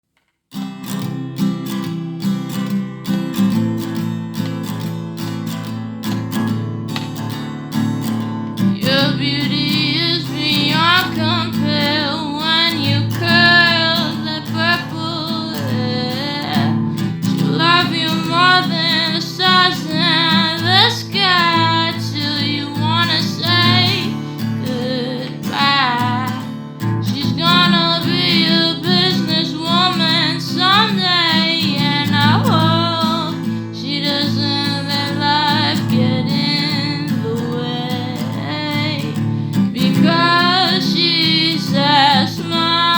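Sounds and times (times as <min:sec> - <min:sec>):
acoustic guitar: 0:00.5 - 0:42.9
woman singing: 0:08.6 - 0:42.9.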